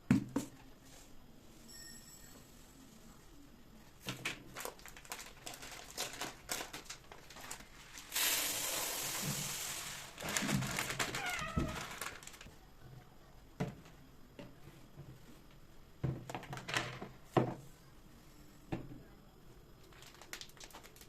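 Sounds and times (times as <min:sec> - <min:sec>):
packaging crinkling: 0:04.5 - 0:08.2, 0:10.1 - 0:12.5, 0:19.9 - 0:21.0
steady hiss: 0:06.7 - 0:12.5.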